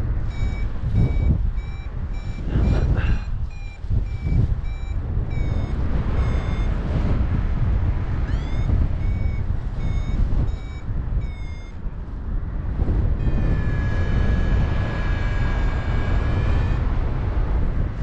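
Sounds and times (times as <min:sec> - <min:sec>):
airflow rumbling on microphone: 0:00.0 - 0:18.0
variometer beeping: 0:00.2 - 0:07.1, 0:08.2 - 0:11.8, 0:13.2 - 0:16.9
rising chirp: 0:00.3 - 0:06.8, 0:08.3 - 0:11.8, 0:13.2 - 0:16.8.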